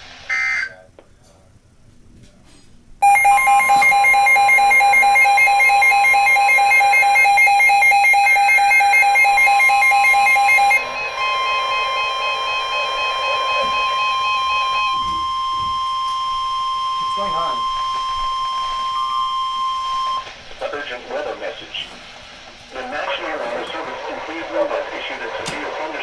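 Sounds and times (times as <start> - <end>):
rapidly pulsing alarm beeps: 0.3 - 0.8, 3.0 - 20.3
steady warning alarm tone: 0.3 - 0.8, 3.0 - 21.8.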